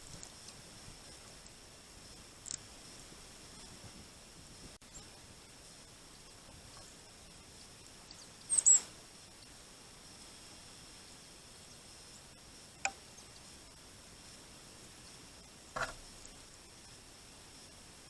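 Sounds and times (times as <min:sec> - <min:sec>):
high-pitched bird call: 0:08.5 - 0:08.8.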